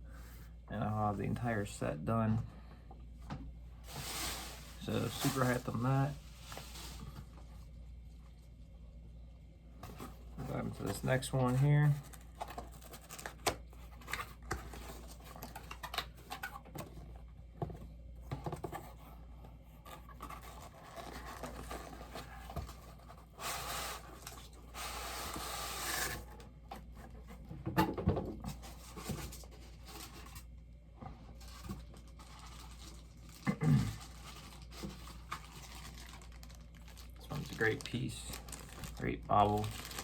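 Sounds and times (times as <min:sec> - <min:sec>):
packaging rustling or tearing: 0:03.9 - 0:07.2, 0:10.5 - 0:16.5, 0:19.9 - 0:26.4, 0:31.3 - 0:40.0.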